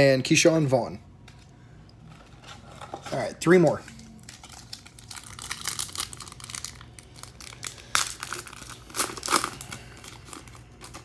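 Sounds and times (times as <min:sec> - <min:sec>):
wrapper crinkling: 0:04.0 - 0:11.0
wrapper ripping open: 0:04.2 - 0:11.0.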